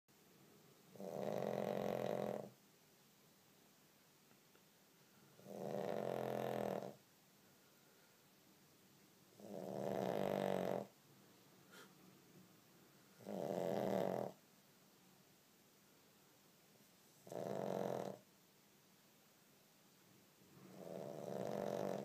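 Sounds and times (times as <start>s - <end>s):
dog snoring: 0.9s - 2.6s, 5.4s - 7.0s, 9.4s - 10.9s, 13.2s - 14.4s, 17.2s - 18.2s, 20.7s - 22.0s.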